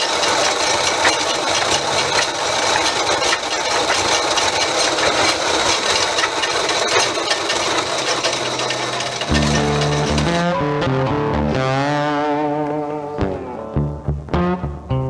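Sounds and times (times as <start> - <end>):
lathe gears rattling: 0.0 - 10.6.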